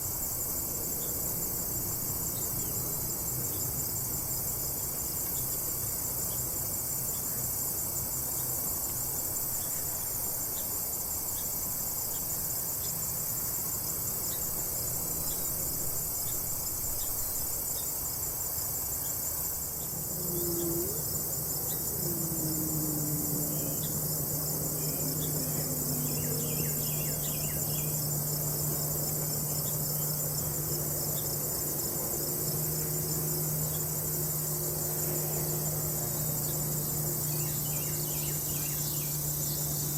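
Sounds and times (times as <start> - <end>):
crickets trilling: 0.0 - 39.9
low droning hum with gliding tones: 20.0 - 39.9.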